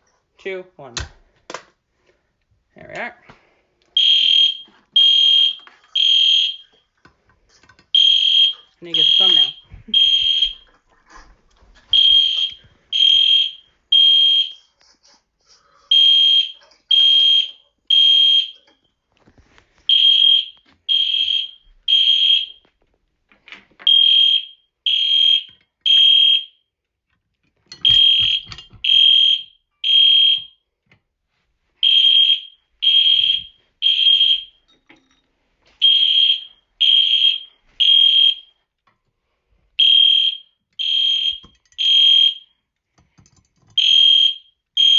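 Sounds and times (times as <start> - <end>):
fire alarm horn beeps: 4.0 - 6.6, 8.0 - 10.6, 12.0 - 14.6, 15.9 - 18.6, 19.9 - 22.6, 23.9 - 26.6, 27.9 - 30.6, 31.8 - 34.6, 35.8 - 38.5, 39.8 - 42.5, 43.8 - 44.9.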